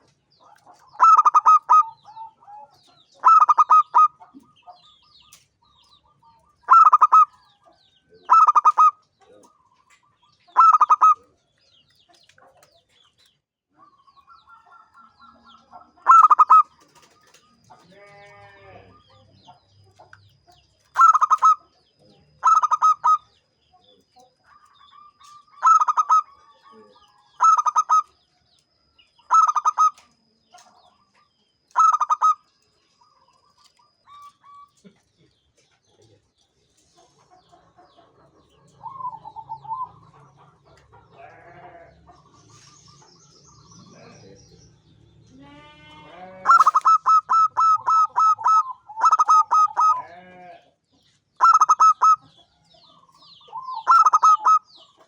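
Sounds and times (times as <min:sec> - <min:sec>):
dove cooing: 0:00.6 - 0:04.5, 0:06.7 - 0:07.5, 0:08.2 - 0:11.3, 0:16.0 - 0:19.3, 0:20.9 - 0:21.7, 0:22.4 - 0:23.3, 0:24.5 - 0:28.1, 0:29.3 - 0:30.1, 0:31.8 - 0:32.4, 0:38.6 - 0:40.5, 0:46.3 - 0:50.4, 0:51.4 - 0:52.4, 0:53.4 - 0:54.8.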